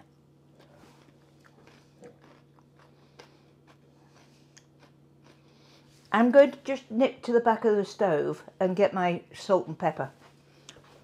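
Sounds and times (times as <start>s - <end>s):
faint chewing: 0.0s - 6.1s
steady low hum: 0.0s - 11.0s.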